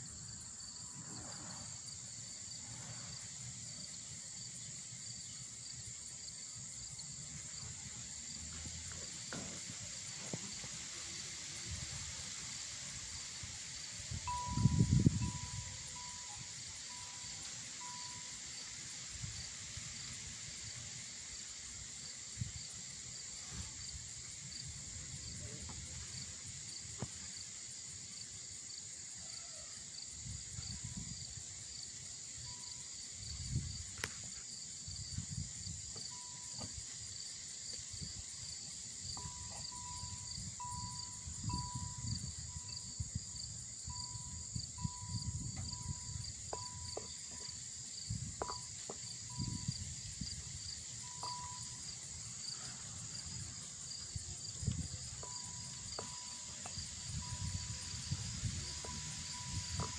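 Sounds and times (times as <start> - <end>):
insects trilling and chirping: 0.0 - 59.9.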